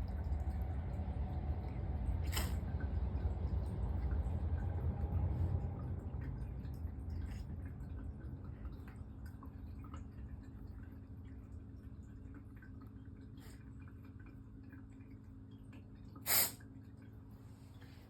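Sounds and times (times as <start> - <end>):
faint steady hum: 0.0 - 18.0
cat sneezing: 2.2 - 2.6, 16.2 - 16.6.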